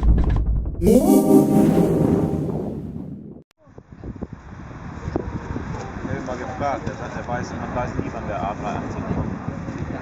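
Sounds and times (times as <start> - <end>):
organ-like synthesizer chord: 0.8 - 3.2.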